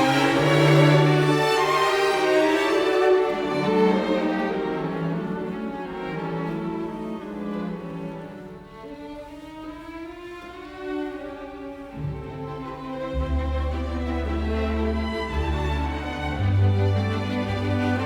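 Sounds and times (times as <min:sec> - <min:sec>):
slow bowed strings: 0:00.0 - 0:18.0.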